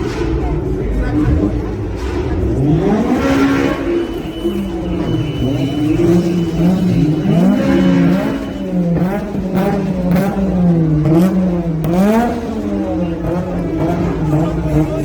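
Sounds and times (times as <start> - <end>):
car engine idling and revving: 0.0 - 15.0.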